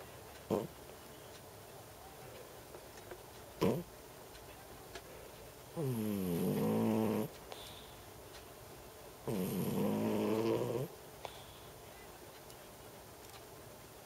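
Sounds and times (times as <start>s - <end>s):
cat snoring: 0.5s - 0.7s, 3.6s - 3.9s, 5.8s - 7.3s, 9.3s - 11.5s.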